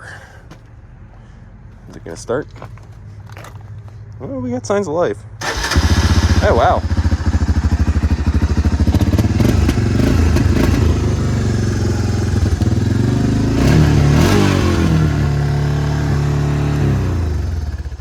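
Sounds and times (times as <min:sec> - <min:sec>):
atv engine running unevenly: 0:05.4 - 0:18.0.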